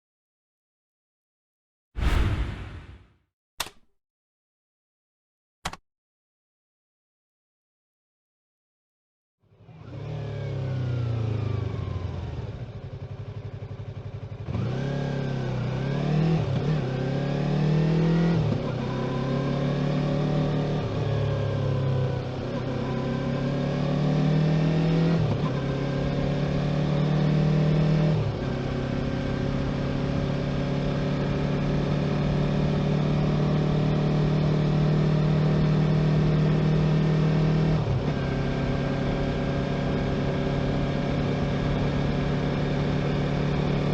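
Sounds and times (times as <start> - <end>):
motorcycle engine accelerating: 9.6 - 43.9.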